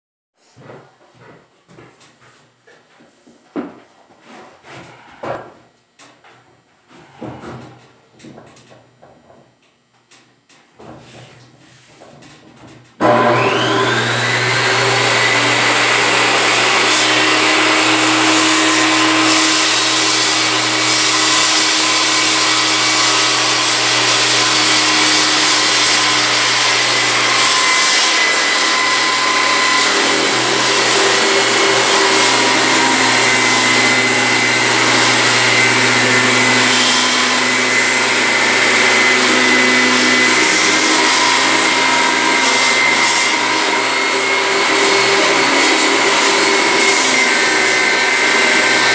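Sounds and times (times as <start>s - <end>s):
circular saw cutting wood: 13.0s - 48.9s.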